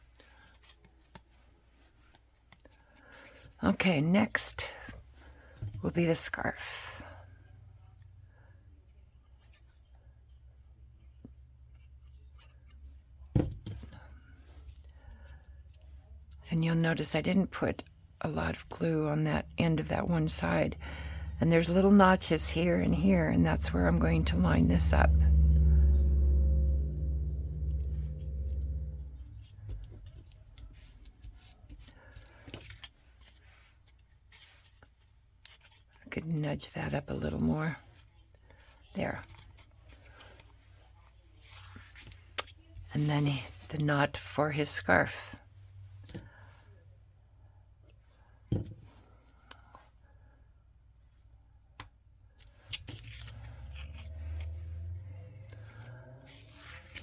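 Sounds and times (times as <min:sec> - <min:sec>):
low hum: 0:07.0 - 0:32.4, 0:52.7 - 0:57.0
paper rubbing and rustling: 0:27.7 - 0:36.0, 0:52.4 - 0:54.4, 0:55.4 - 0:57.0.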